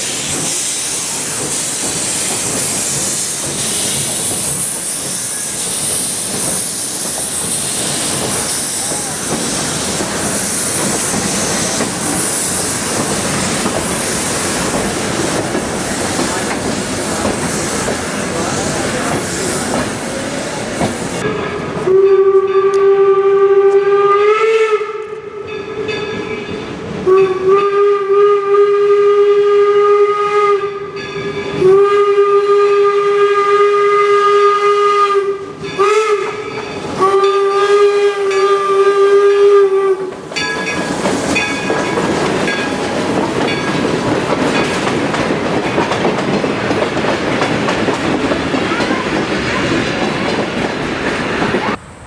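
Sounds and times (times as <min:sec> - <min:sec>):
train rail clatter: 0:00.0 - 0:23.9, 0:35.3 - 0:52.0
steam whistle blasts: 0:21.3 - 0:25.0, 0:27.0 - 0:31.0, 0:31.6 - 0:40.2.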